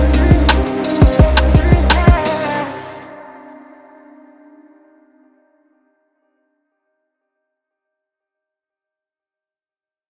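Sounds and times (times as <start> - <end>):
ambient background music: 0.0 - 6.0.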